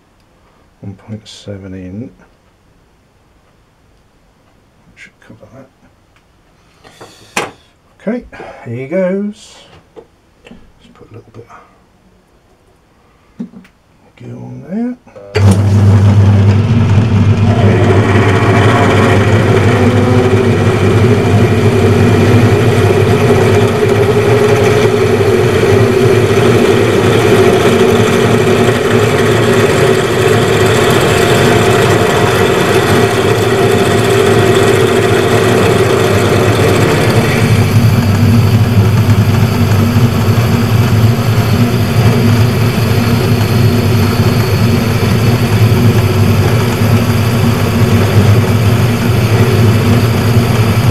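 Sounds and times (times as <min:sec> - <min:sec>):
metal lathe humming: 0:15.4 - 0:50.9
boring tool cutting tone: 0:16.2 - 0:50.9.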